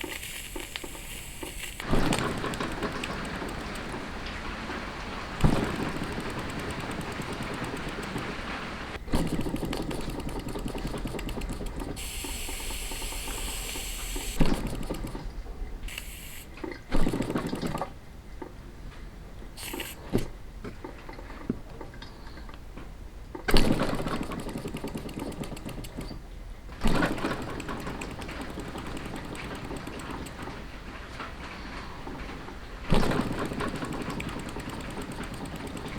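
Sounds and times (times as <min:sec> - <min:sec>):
steam hiss: 0:00.0 - 0:15.2, 0:15.9 - 0:16.6, 0:19.6 - 0:20.1
model steam engine clattering: 0:00.0 - 0:18.6, 0:19.6 - 0:22.5, 0:23.4 - 0:35.9.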